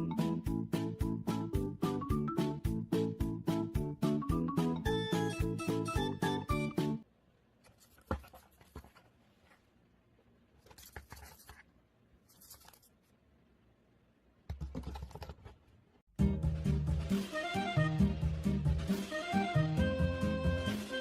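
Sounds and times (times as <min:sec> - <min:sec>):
background music: 0:00.0 - 0:07.0, 0:16.1 - 0:21.0
scratching and rustling: 0:07.6 - 0:09.7, 0:10.6 - 0:13.2.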